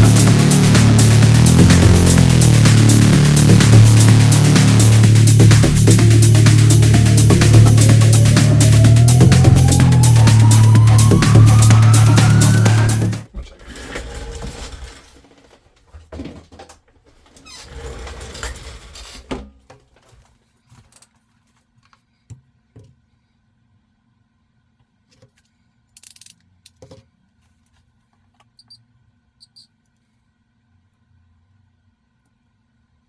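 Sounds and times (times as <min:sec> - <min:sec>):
light clicks of small parts: 0:25.3 - 0:26.8.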